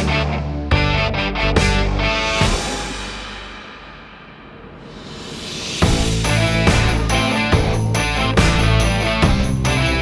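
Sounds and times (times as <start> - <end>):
rock music with guitars and drums: 0.0 - 3.2, 5.8 - 10.0.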